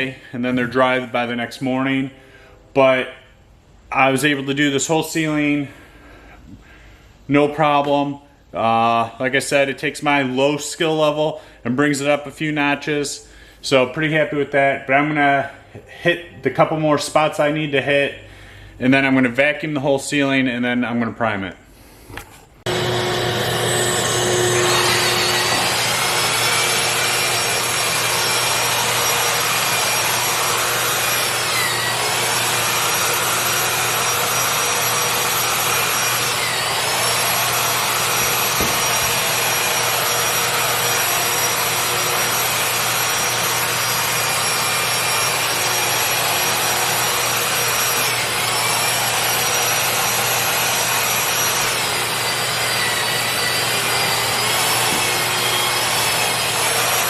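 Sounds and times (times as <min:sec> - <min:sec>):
shop vac running: 0:22.1 - 0:57.0
power drywall sander whine: 0:22.6 - 0:57.0.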